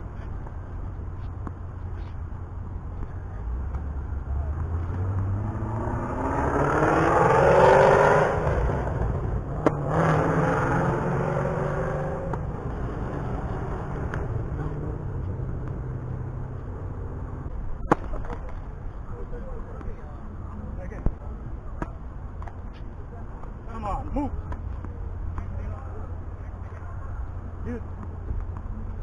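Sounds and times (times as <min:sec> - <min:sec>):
vehicle engine accelerating past: 0:03.8 - 0:16.6.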